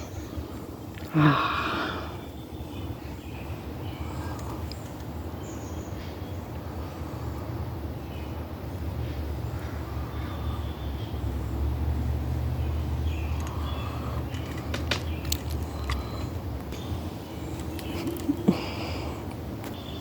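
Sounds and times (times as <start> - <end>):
distant vehicle rumble: 0.0 - 20.0
faint bird chirps: 12.6 - 19.0, 19.7 - 20.0.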